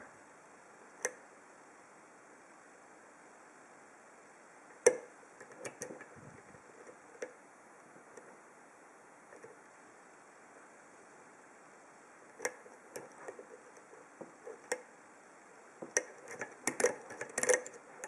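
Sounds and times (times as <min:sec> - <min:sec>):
lock pick clicking in padlock: 0:15.9 - 0:17.8.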